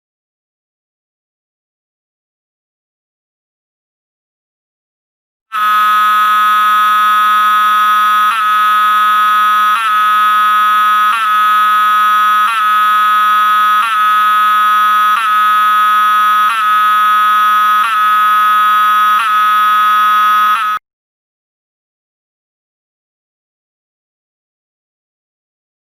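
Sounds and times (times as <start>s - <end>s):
buzzy fire alarm horn: 5.5s - 20.8s.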